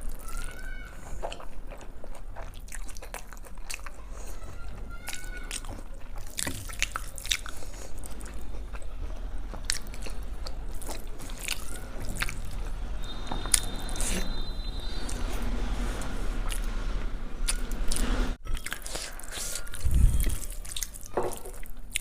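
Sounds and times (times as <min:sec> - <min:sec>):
person biting and chewing food: 0:05.4 - 0:08.9, 0:17.4 - 0:22.0.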